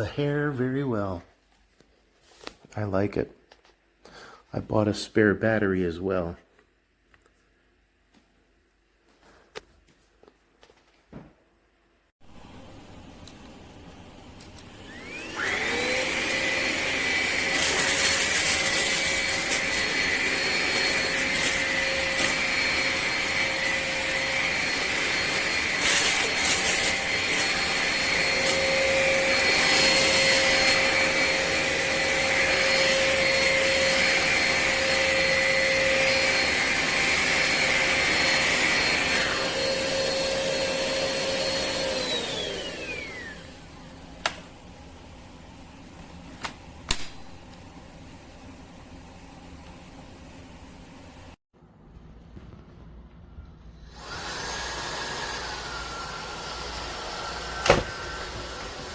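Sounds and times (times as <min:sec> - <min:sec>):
stick vacuum motor whining: 0:14.4 - 0:43.6, 0:53.9 - 0:58.9.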